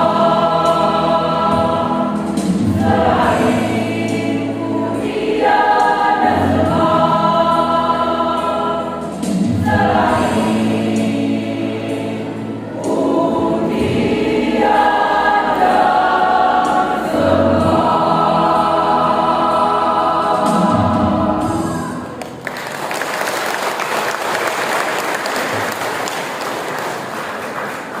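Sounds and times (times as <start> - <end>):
choir singing long notes: 0.0 - 22.4
audience applause: 22.2 - 28.0.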